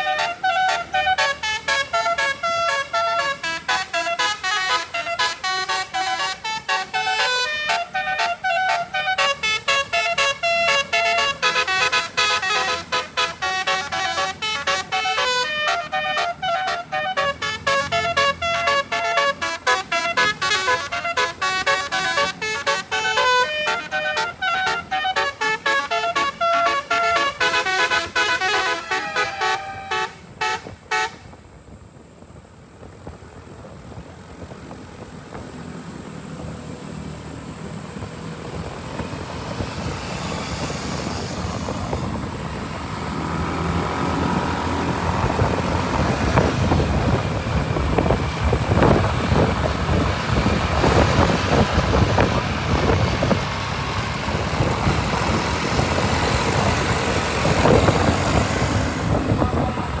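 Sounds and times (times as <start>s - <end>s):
vehicle engine and road noise: 0.0s - 60.0s.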